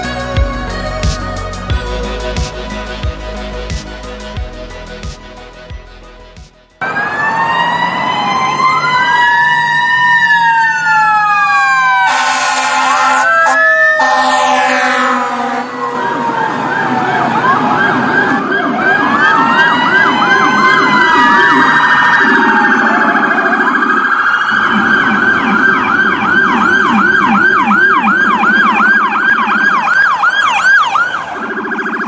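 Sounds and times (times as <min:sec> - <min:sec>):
emergency sirens wailing: 0:00.0 - 0:32.0
emergency sirens yelping: 0:06.8 - 0:32.0.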